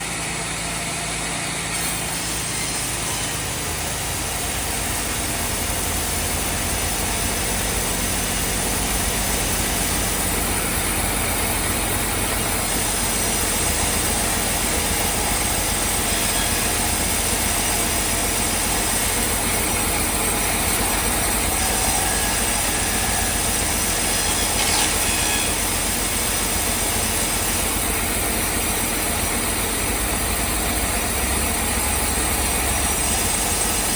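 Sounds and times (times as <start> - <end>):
sawmill machinery din: 0.0 - 33.9.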